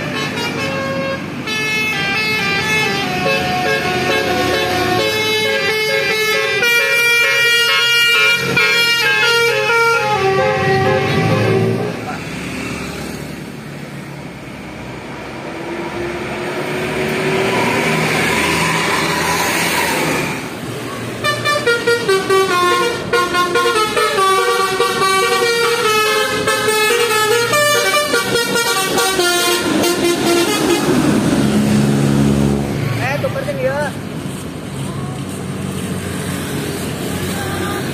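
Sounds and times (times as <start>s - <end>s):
bus engine and tyre noise: 0.0s - 37.9s
multi-tone air horn tune: 0.1s - 12.0s, 21.2s - 30.9s.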